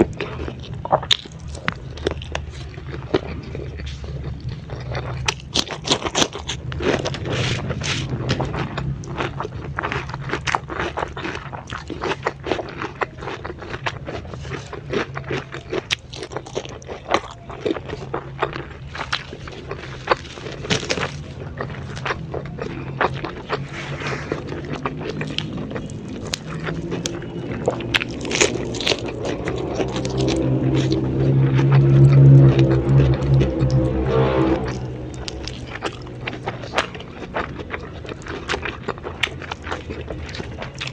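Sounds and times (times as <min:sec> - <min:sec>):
crunchy vegetable chewing: 0:00.0 - 0:34.0, 0:34.6 - 0:40.9
steady low hum: 0:18.0 - 0:40.9.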